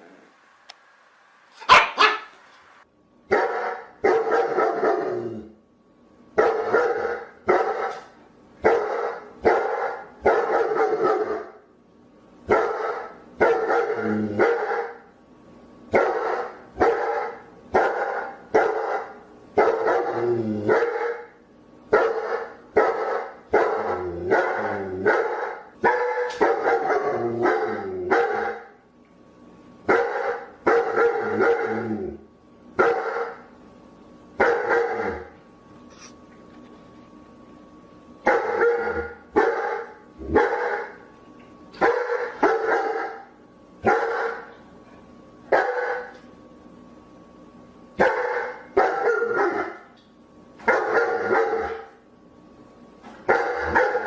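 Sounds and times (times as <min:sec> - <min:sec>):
dog barking: 0:01.6 - 0:02.4, 0:03.3 - 0:05.1, 0:06.4 - 0:11.6, 0:12.5 - 0:15.0, 0:15.9 - 0:21.3, 0:21.9 - 0:28.7, 0:29.9 - 0:31.7, 0:32.8 - 0:33.4, 0:34.4 - 0:35.3, 0:38.2 - 0:41.0, 0:41.8 - 0:44.5, 0:45.5 - 0:46.2, 0:48.0 - 0:49.9, 0:50.6 - 0:52.0, 0:53.3 - 0:54.0.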